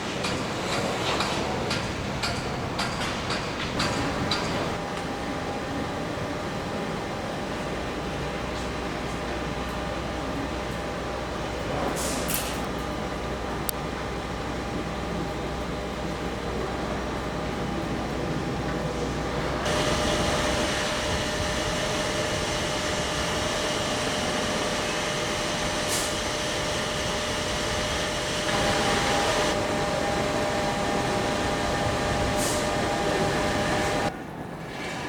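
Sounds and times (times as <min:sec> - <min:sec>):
train rumbling and humming: 0:00.0 - 0:35.0
short hisses: 0:32.4 - 0:32.7.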